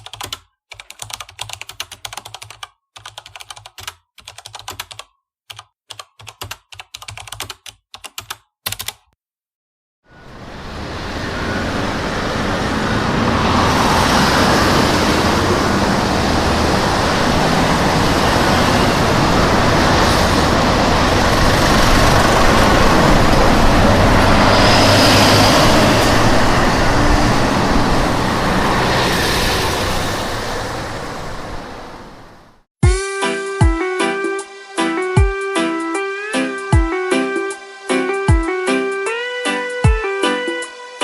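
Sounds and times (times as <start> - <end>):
steady outdoor roar and hiss: 10.1 - 32.6.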